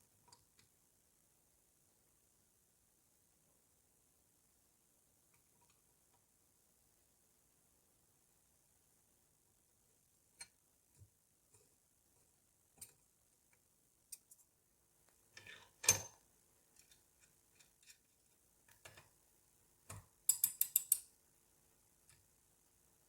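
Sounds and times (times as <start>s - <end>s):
scissors blades clicking: 20.3s - 21.1s.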